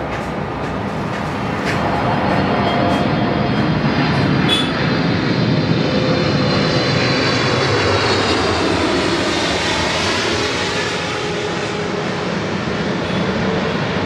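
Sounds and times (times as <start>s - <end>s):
high engine whine: 0.0s - 14.0s
jet engines roaring: 0.0s - 14.0s.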